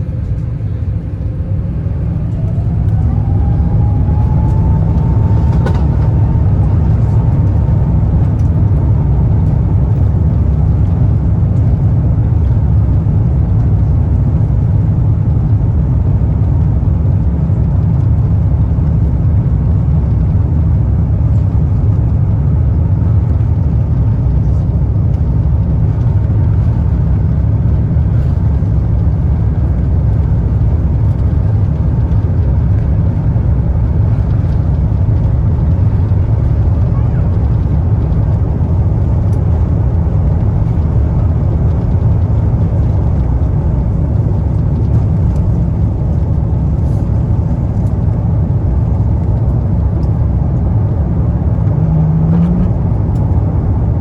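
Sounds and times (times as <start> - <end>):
jet engines spooling up: 0.0 - 8.4
jet engine rumble: 0.0 - 54.0.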